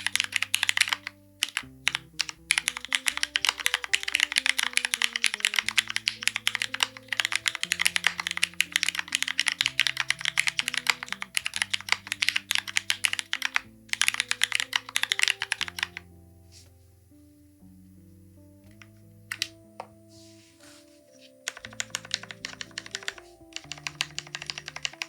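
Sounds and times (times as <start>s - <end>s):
fast typing on mechanical keyboard: 0.0s - 16.0s, 21.5s - 25.0s
soft background music: 0.0s - 25.0s.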